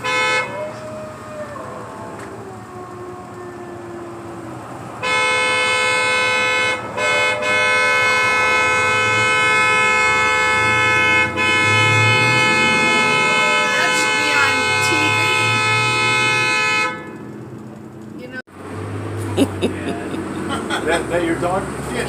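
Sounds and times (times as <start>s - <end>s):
truck horn: 0.0s - 0.7s, 5.0s - 17.5s.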